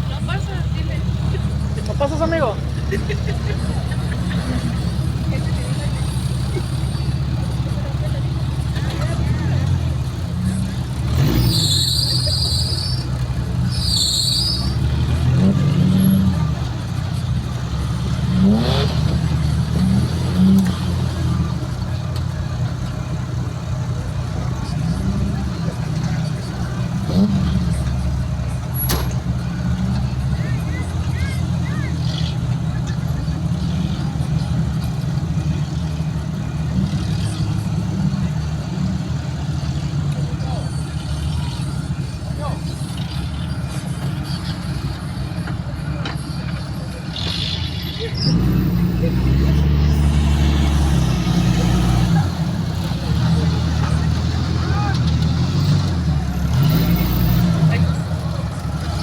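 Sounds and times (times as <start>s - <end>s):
off-road engine running at low revs: 0.0s - 59.0s
high-pitched squeals: 11.1s - 15.0s.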